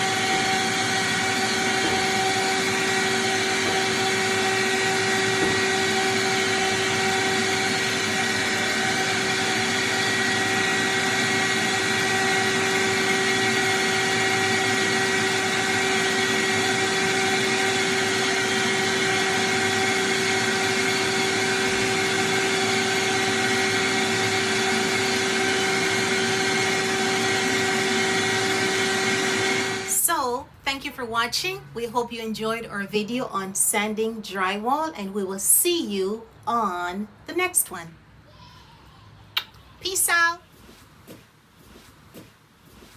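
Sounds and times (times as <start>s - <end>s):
electric motor whine: 0.0s - 30.0s.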